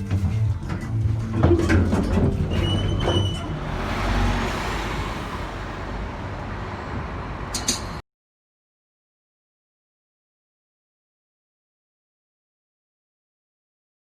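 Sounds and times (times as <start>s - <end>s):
bus passing: 0.3s - 8.0s
brief high squeal: 2.5s - 3.6s.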